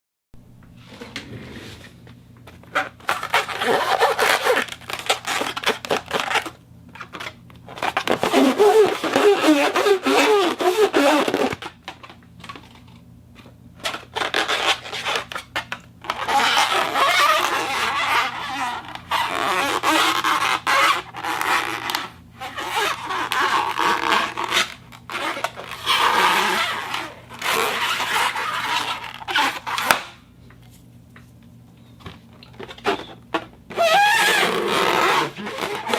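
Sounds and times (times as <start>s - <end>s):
rubbing and scraping: 7.7s - 11.6s, 13.8s - 30.0s, 33.7s - 35.9s.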